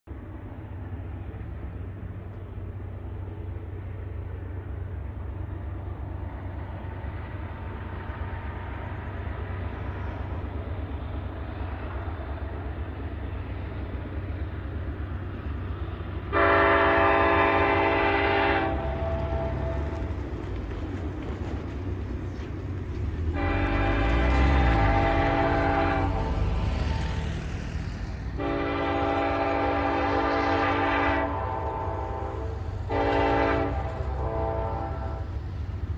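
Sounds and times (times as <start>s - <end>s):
diesel locomotive engine rumble: 0.0s - 35.9s
locomotive air horn: 16.3s - 20.0s, 23.3s - 26.6s, 28.4s - 35.4s.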